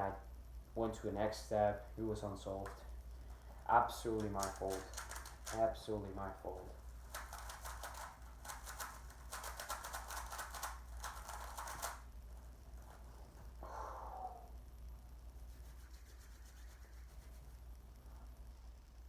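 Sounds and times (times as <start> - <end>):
plastic puzzle cube clicking: 4.2 - 5.6, 7.1 - 12.0.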